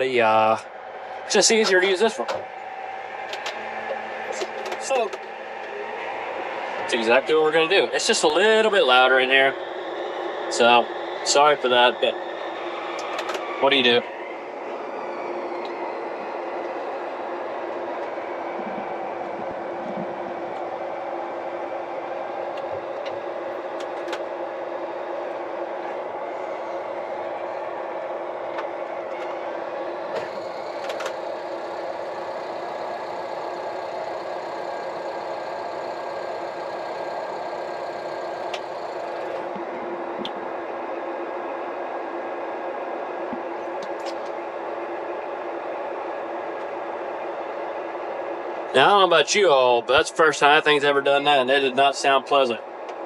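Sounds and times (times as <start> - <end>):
tractor engine running: 0.0 - 27.5, 28.5 - 40.5
high whine: 0.0 - 53.0.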